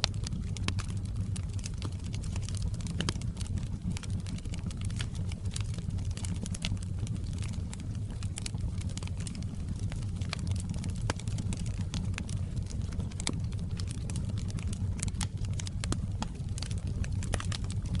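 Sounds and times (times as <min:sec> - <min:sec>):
wood fire crackling: 0:00.0 - 0:18.0.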